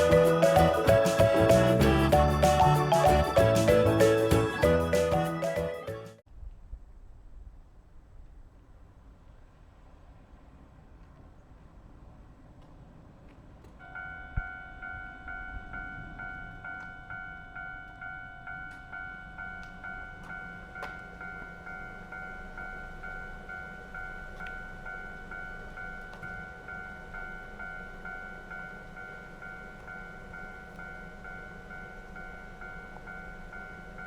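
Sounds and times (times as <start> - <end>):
level crossing warning bell: 0.0 - 6.2, 13.8 - 34.0.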